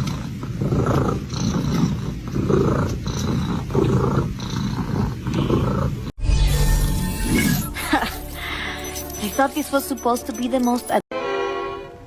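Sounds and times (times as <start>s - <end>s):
cat rumbling purr: 0.0s - 6.1s.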